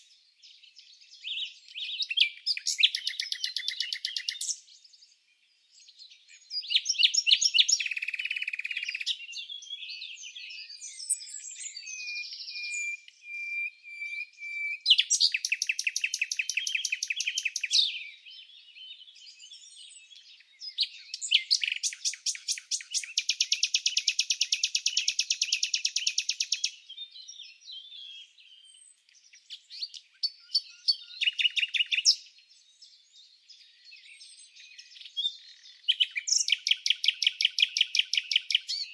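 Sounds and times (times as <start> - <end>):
songbirds chirping and trilling: 0.0 - 38.9.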